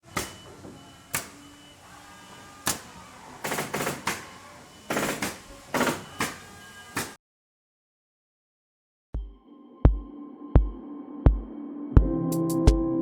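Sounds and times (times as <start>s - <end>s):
faint steady tones: 0.0s - 7.1s.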